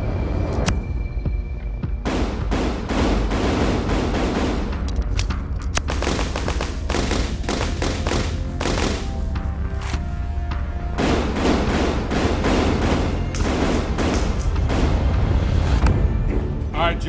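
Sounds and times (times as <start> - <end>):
background music with low bass: 0.0 - 17.0
rapid gunfire: 2.1 - 4.9, 5.8 - 9.3, 11.0 - 15.2.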